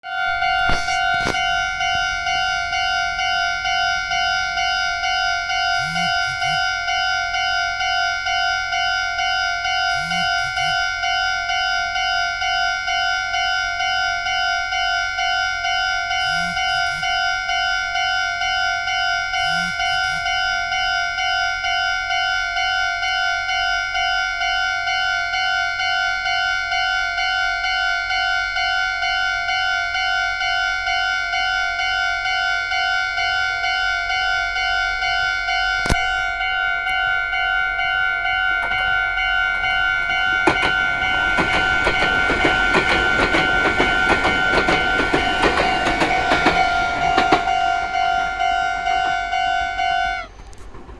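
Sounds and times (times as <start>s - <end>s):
level crossing warning bell: 0.0s - 50.6s
train wheels clacking on rails: 39.5s - 49.6s.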